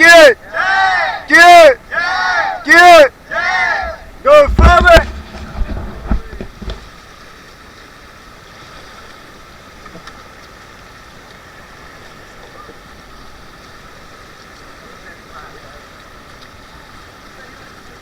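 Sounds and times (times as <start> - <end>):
people shouting: 0.0 - 5.0
river water rushing: 0.0 - 18.0.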